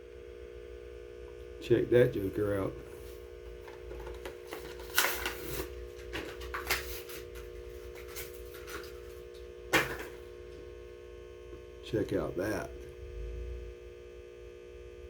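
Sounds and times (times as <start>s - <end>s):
steady electrical hum: 0.0s - 15.0s
plastic and card tearing: 4.0s - 9.3s.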